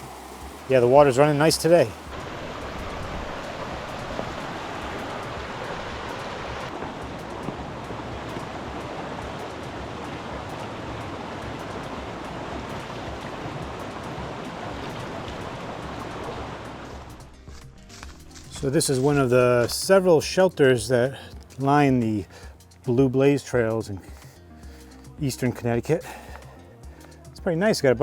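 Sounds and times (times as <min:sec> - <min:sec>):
stream rushing: 0:00.0 - 0:20.0.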